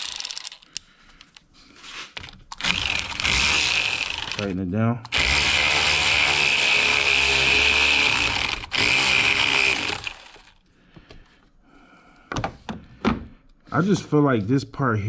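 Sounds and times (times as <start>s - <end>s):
cordless power tool whining: 2.5s - 10.6s.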